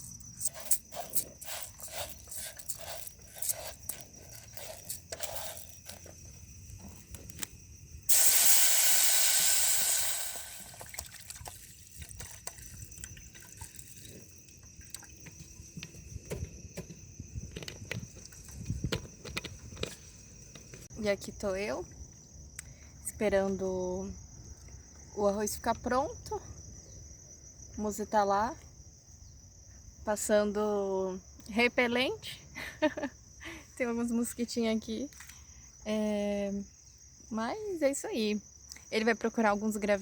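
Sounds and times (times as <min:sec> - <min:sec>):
loud hiss: 0:08.1 - 0:11.0.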